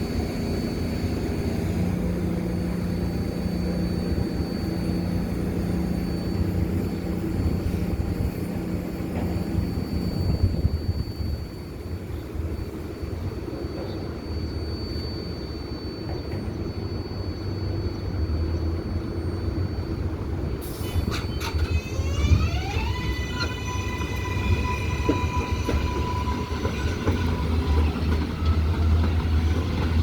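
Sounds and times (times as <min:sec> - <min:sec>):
subway train rumble: 0:00.0 - 0:30.0
traction motor whine rising: 0:20.4 - 0:30.0.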